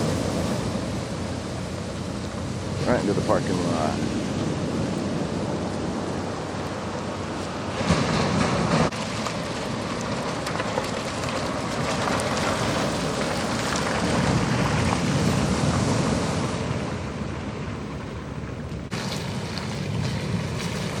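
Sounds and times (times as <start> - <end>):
ocean surf breaking: 0.0 - 21.0.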